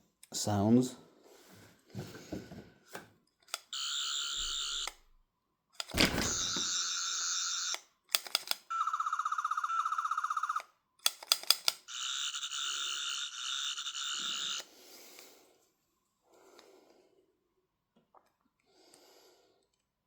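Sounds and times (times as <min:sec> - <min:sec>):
toy electronic buzzing: 0:06.3 - 0:07.8, 0:11.9 - 0:14.7.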